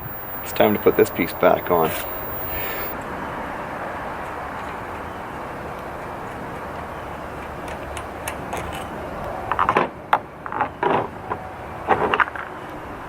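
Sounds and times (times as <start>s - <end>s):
steady hiss: 0.0s - 3.0s.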